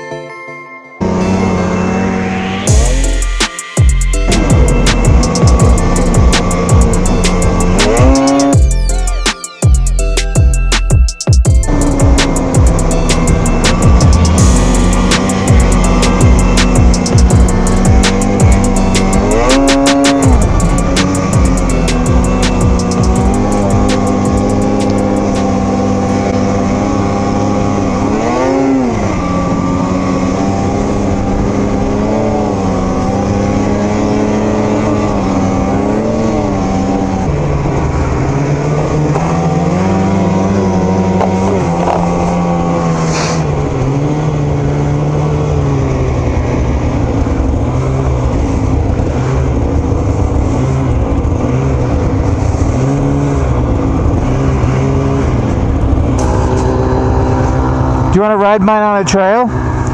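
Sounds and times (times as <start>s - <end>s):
snowmobile engine revving: 1.0s - 9.2s, 11.6s - 59.9s
brief hiss: 43.0s - 43.4s.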